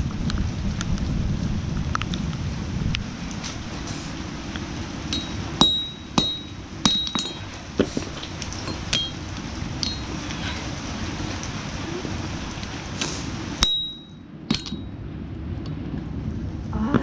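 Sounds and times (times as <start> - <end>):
hammer striking steel: 5.1 - 9.2, 13.6 - 14.9.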